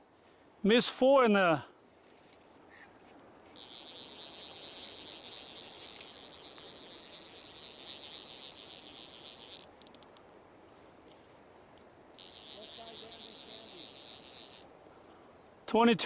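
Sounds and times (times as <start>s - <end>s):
fishing reel drag buzzing: 3.4s - 10.1s, 12.2s - 14.7s
reel spool clicks: 3.6s - 10.3s, 11.8s - 14.7s.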